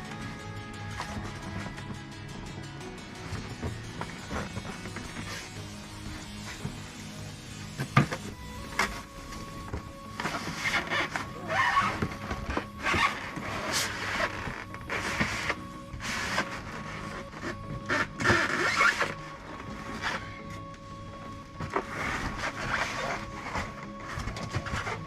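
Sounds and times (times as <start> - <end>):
background music with held tone: 0.0 - 25.0
packaging rustling and scraping: 3.2 - 25.0.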